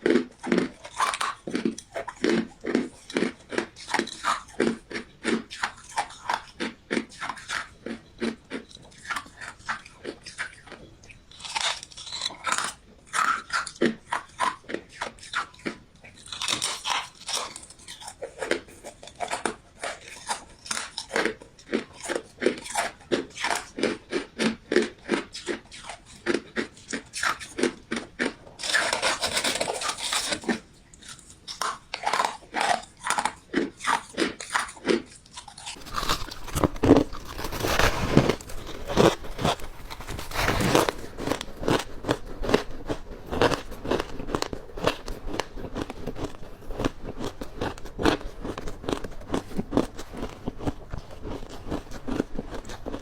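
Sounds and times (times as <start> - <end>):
ice being chewed: 0.0 - 53.0.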